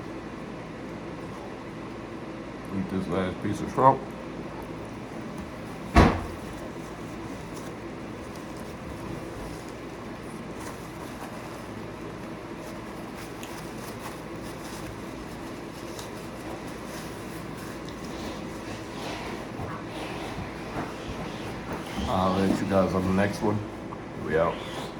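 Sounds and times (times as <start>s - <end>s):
steady background hum: 0.0s - 24.9s
faint chewing: 6.5s - 23.0s.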